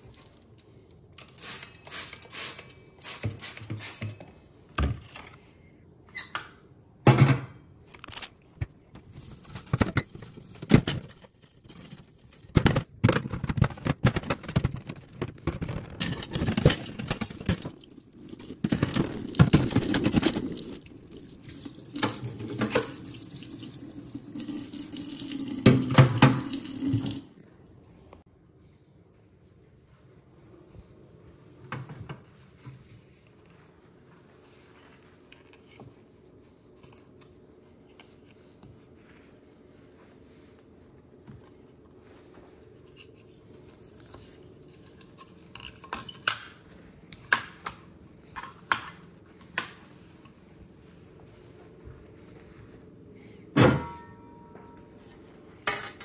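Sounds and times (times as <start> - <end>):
water running from a tap: 17.8 - 27.3.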